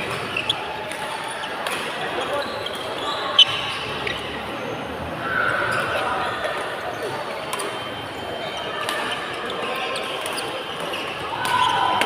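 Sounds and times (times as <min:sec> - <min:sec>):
voices echoing in a hall: 0:00.0 - 0:12.0
rackets striking shuttlecock: 0:00.1 - 0:02.2.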